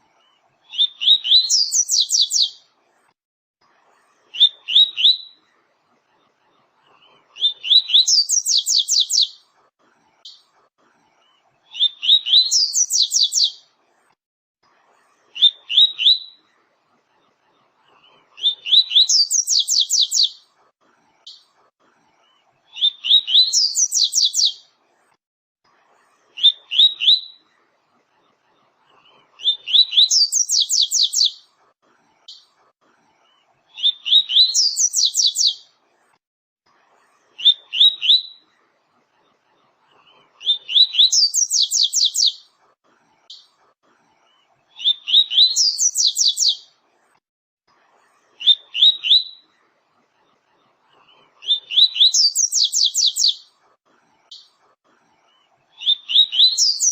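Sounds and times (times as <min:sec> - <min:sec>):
bird singing whistled trills: 0:29.5 - 0:31.4, 0:33.8 - 0:35.6, 0:44.8 - 0:46.6, 0:51.7 - 0:53.4, 0:55.8 - 0:56.9.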